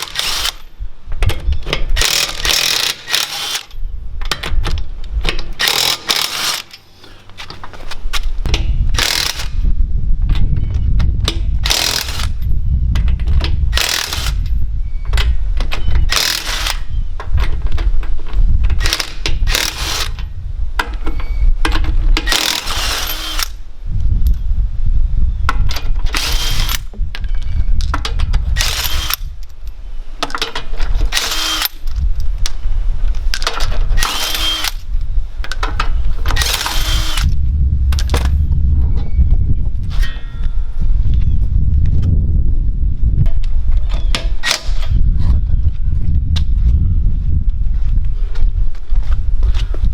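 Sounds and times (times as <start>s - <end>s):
low rumble: 8.3s - 29.8s, 31.8s - 44.1s, 44.7s - 49.9s.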